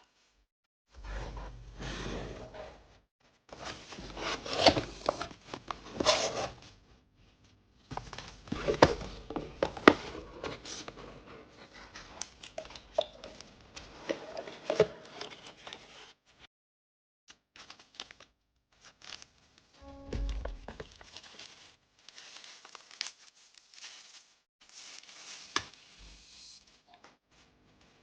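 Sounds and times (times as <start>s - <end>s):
packaging rustling and scraping: 3.5s - 6.8s, 7.9s - 12.3s, 19.9s - 26.0s.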